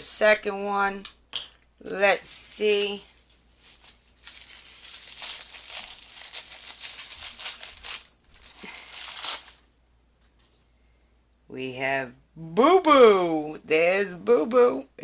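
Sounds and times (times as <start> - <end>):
plastic packaging crinkling: 1.9 - 9.9.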